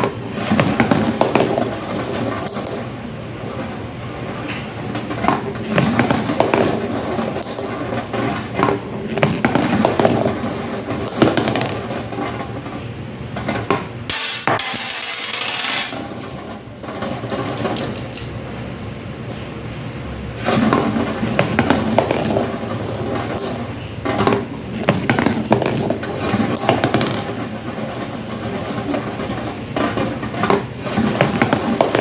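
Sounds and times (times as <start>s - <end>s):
marbles clicking and clacking: 0.0s - 3.0s, 5.2s - 12.5s, 14.1s - 18.5s, 20.7s - 32.0s
marbles rolling on track: 5.0s - 12.8s, 14.1s - 18.5s, 20.5s - 32.0s.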